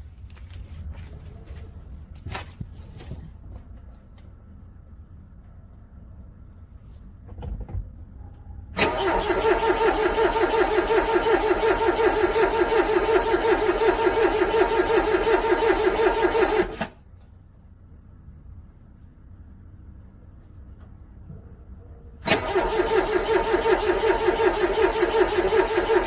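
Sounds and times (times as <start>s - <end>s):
car engine cranking: 8.8s - 17.0s, 22.2s - 26.0s.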